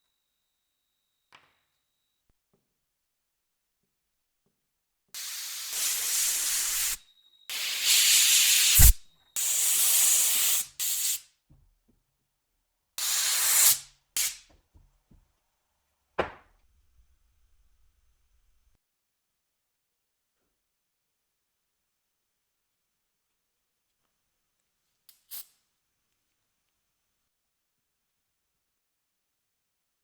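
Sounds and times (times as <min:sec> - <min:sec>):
hissing spray bursts: 0:05.2 - 0:11.2, 0:13.0 - 0:14.4
sharp click: 0:08.8 - 0:09.0.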